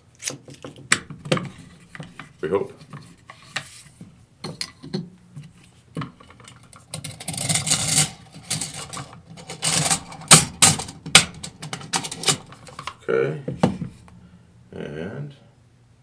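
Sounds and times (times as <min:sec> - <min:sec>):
metal parts clicking and clinking: 0:06.2 - 0:12.9
metal scraping: 0:06.2 - 0:13.0.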